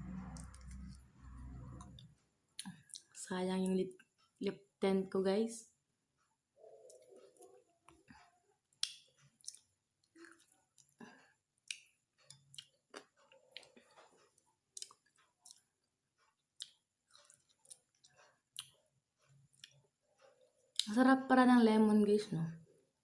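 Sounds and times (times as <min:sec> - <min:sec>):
wet chewing clicks and smacks: 0:02.6 - 0:03.2, 0:08.7 - 0:11.0, 0:11.6 - 0:15.8, 0:16.4 - 0:18.8, 0:19.5 - 0:19.8.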